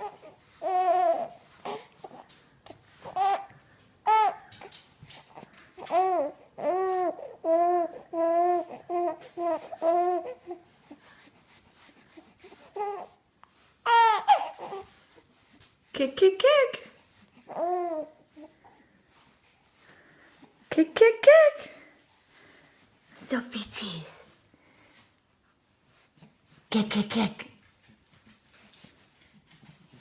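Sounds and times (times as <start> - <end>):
baby cooing and babbling: 0.0 - 10.6, 12.7 - 13.2, 13.9 - 14.9, 17.4 - 18.5.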